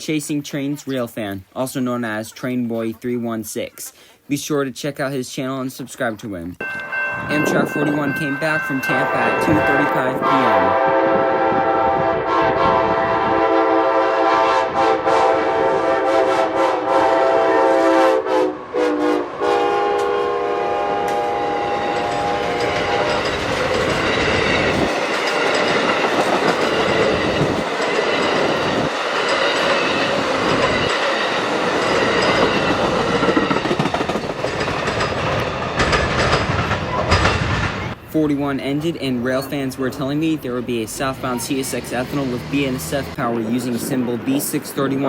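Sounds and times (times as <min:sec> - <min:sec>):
clickety-clack over rail joints: 0:06.6 - 0:10.7, 0:21.0 - 0:38.4
train wheels rolling on rails: 0:06.6 - 0:11.7, 0:19.6 - 0:45.0
locomotive air horn blasts: 0:09.0 - 0:23.3.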